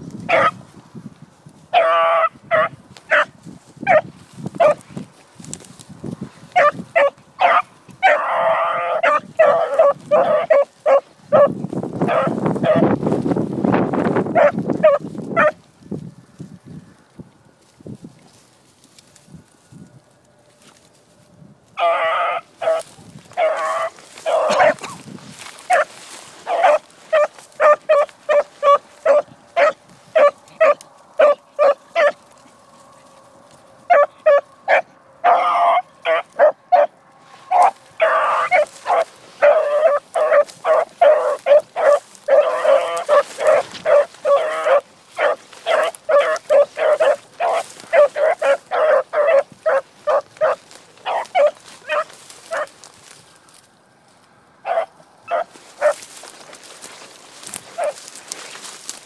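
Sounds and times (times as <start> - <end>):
dog barking: 0.3 - 0.6, 1.8 - 3.3, 4.6 - 4.8, 6.6 - 11.5, 12.1 - 12.8, 14.3 - 15.6, 21.8 - 22.8, 23.4 - 25.0, 25.7 - 32.2, 33.9 - 52.7, 54.6 - 56.0, 57.7 - 58.0.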